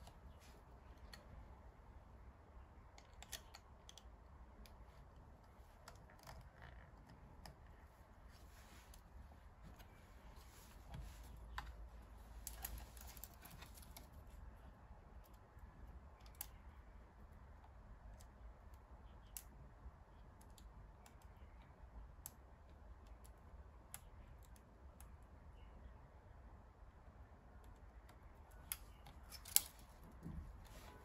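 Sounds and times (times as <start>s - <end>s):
small clicks and taps: 2.8s - 7.9s, 15.2s - 16.8s.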